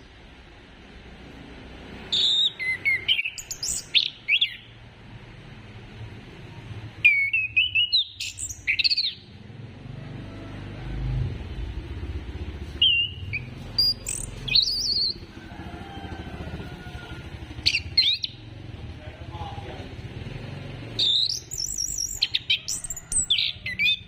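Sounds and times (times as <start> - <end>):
thrush singing whistled phrases: 2.1 - 4.8, 7.0 - 9.3, 12.8 - 15.3, 17.6 - 18.5, 20.9 - 24.0.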